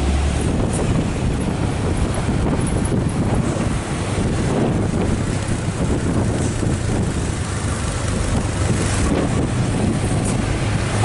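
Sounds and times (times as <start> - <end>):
truck engine droning: 0.0 - 11.0
wind on microphone: 0.0 - 11.0.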